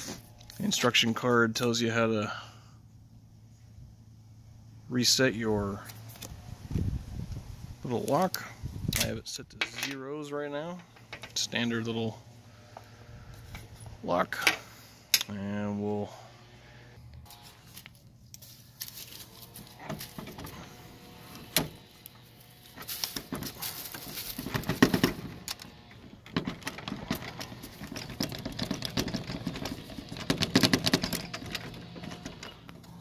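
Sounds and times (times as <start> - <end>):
rattling and clacking: 23.0 - 33.0.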